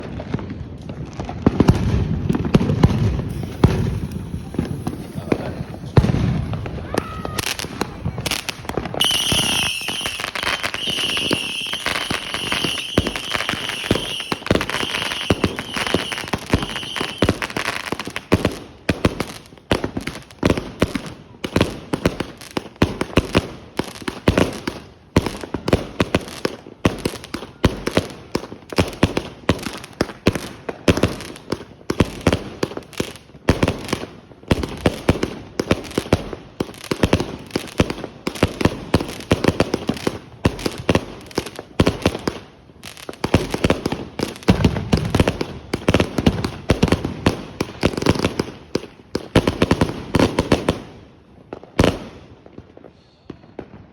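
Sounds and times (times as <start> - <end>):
firework shots firing: 0.0 - 23.4.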